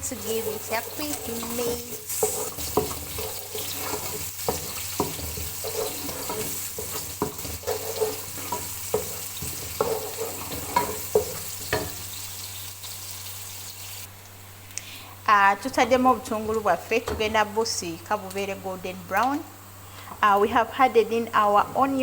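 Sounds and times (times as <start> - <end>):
onions sizzling in oil: 0.0 - 14.1
utensil knocking and scraping pan: 0.5 - 12.1.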